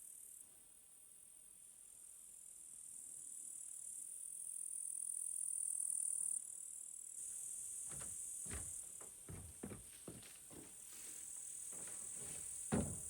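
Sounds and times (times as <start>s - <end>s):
soft footsteps: 7.9s - 13.0s.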